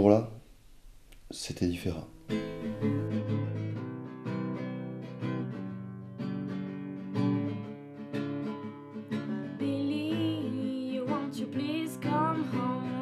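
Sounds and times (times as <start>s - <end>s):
acoustic guitar strumming chords: 2.2s - 13.0s.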